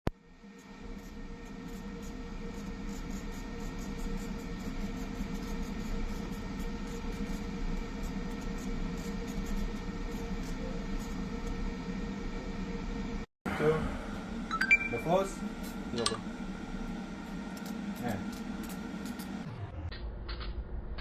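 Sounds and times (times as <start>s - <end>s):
laser marking machine humming: 0.2s - 13.1s.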